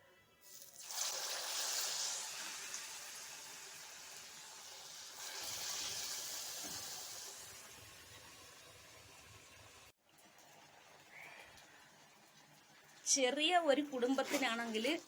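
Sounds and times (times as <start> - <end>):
food sizzling in hot oil: 0.4 - 9.9.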